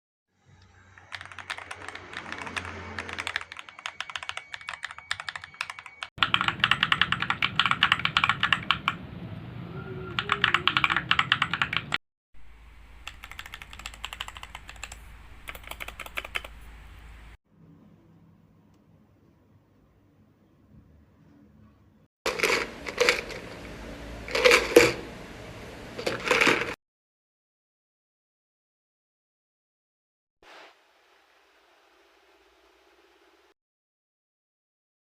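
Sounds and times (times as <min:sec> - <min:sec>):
mechanical keyboard typing: 0:01.0 - 0:09.0, 0:10.2 - 0:12.0, 0:13.0 - 0:16.6.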